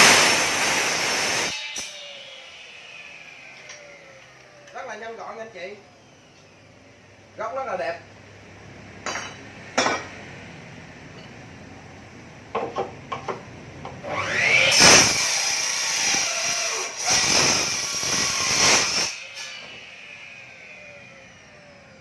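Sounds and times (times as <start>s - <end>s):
saw blade cutting wood: 0.0s - 4.9s, 14.0s - 21.6s
miter saw motor whining: 0.0s - 7.0s, 14.0s - 22.0s.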